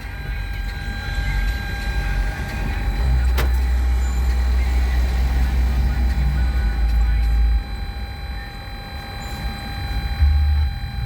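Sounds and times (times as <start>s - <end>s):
muffled bass booming from car stereo: 2.1s - 7.8s, 9.5s - 11.0s.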